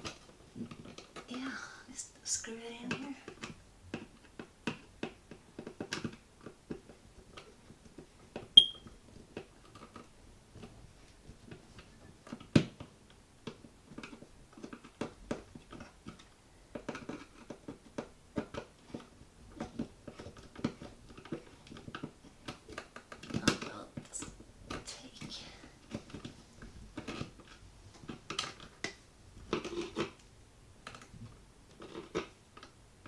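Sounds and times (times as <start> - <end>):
high squeak: 8.6 - 8.8.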